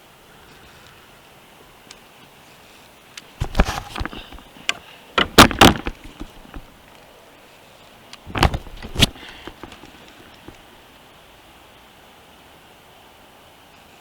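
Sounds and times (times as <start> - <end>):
hard objects knocking on kayak: 5.2 - 6.7, 8.3 - 10.6.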